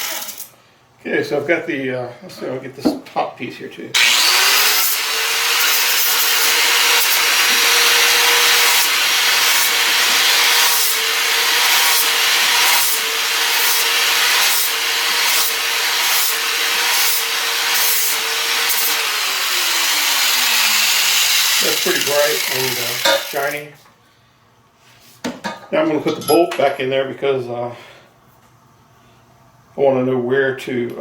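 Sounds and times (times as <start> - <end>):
angle grinder whine: 4.0 - 23.7.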